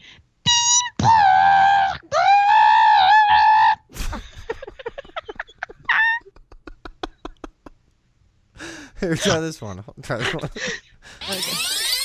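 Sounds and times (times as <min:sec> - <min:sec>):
woman imitating modem squeals: 0:00.4 - 0:03.6, 0:11.2 - 0:12.0.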